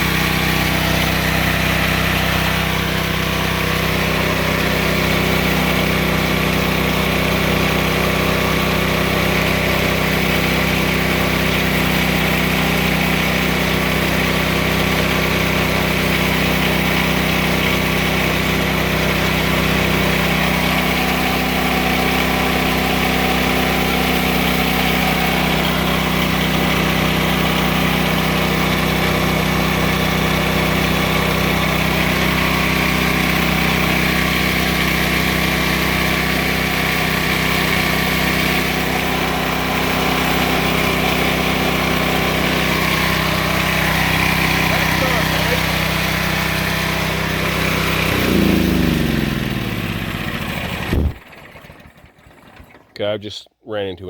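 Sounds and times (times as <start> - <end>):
sawmill engine running: 0.0 - 53.2
band blade cutting log: 50.8 - 51.2.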